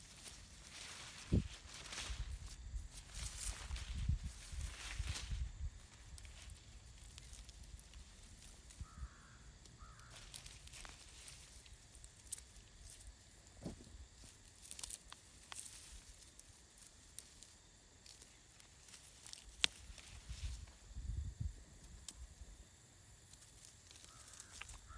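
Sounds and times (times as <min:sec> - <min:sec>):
small clicks and snaps: 0:14.2 - 0:20.1, 0:23.3 - 0:24.9.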